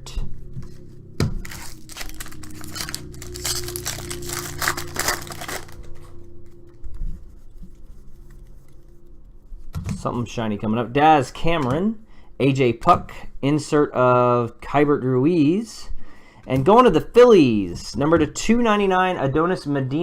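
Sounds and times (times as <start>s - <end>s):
low steady hum: 0.0s - 20.0s
foil pack tearing and crinkling: 1.4s - 6.1s.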